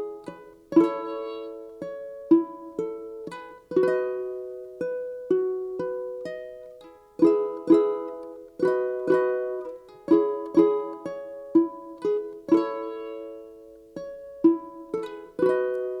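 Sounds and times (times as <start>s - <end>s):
plucked string chords: 0.0s - 16.0s.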